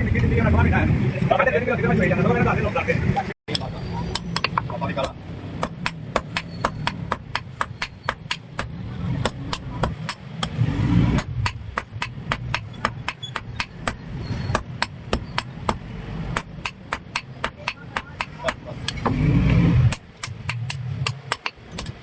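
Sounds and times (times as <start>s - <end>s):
hammer striking iron on anvil: 4.1s - 22.0s.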